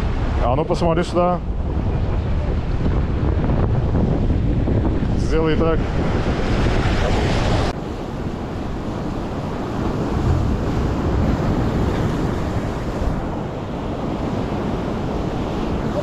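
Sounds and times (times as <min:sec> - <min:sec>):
sea surf washing: 0:00.0 - 0:16.0
wind rumbling on microphone: 0:00.0 - 0:16.0.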